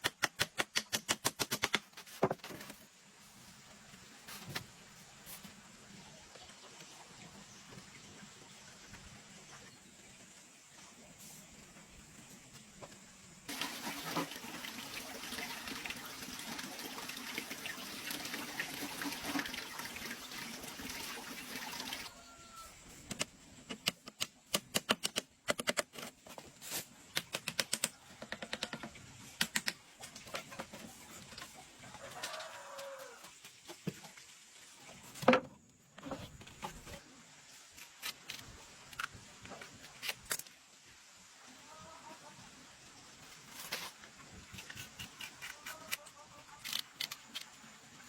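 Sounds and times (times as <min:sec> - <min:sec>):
water gushing: 0:13.5 - 0:22.2
sharp clicks and knocks: 0:23.1 - 0:26.2.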